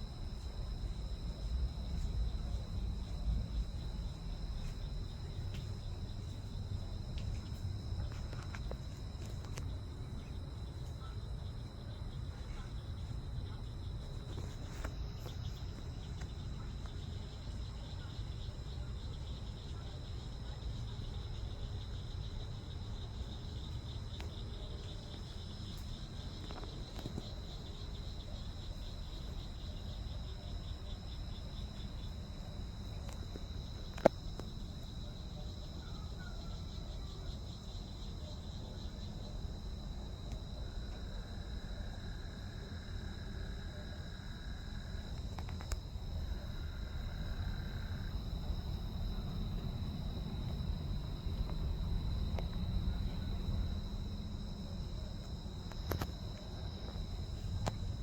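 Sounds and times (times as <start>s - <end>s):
constant low rumble: 0.0s - 58.0s
insects chirping: 0.0s - 58.0s.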